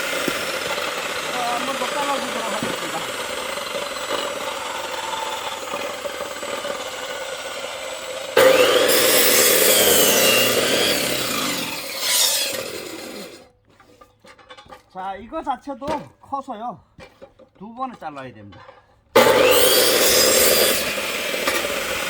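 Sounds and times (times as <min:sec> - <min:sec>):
electric saw cutting log: 0:00.0 - 0:13.5, 0:19.2 - 0:22.0.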